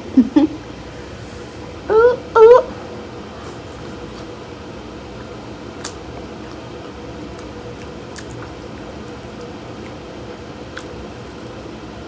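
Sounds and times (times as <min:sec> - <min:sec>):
lip smacks: 0:05.2 - 0:12.0
wet chewing: 0:05.2 - 0:12.0.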